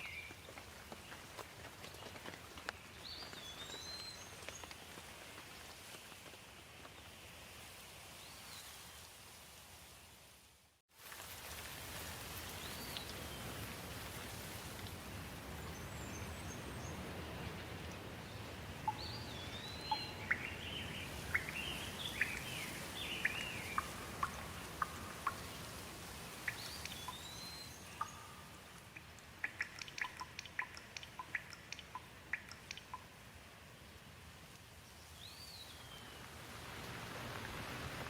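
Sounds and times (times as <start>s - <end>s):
rain hiss: 0.0s - 38.0s
birds chirping: 15.6s - 25.8s, 26.4s - 33.1s
water drops dripping: 23.2s - 25.5s, 28.0s - 33.2s.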